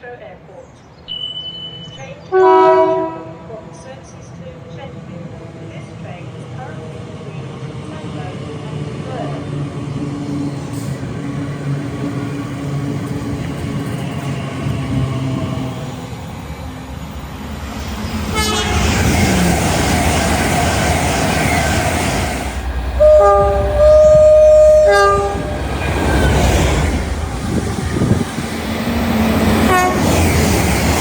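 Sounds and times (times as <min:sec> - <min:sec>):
train rumbling on rails: 0:01.7 - 0:31.0
two-tone train horn: 0:02.3 - 0:03.5, 0:18.3 - 0:19.1, 0:23.0 - 0:25.6, 0:29.7 - 0:30.2.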